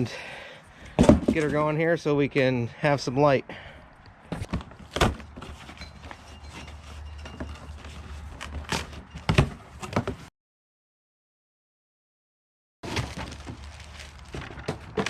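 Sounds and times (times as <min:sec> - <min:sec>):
cardboard packaging rustling: 0:12.8 - 0:15.0.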